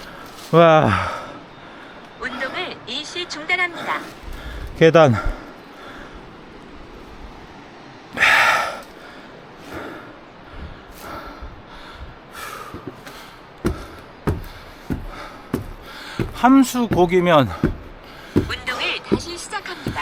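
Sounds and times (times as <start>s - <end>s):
man breathing hard: 0.0s - 2.2s, 4.2s - 6.4s, 8.1s - 16.4s, 17.5s - 18.6s
sharp knocks: 12.7s - 20.0s.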